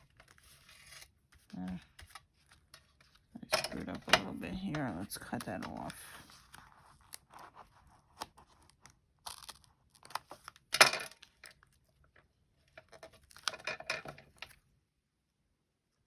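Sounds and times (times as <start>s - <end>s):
paper rustling: 0.0s - 11.8s.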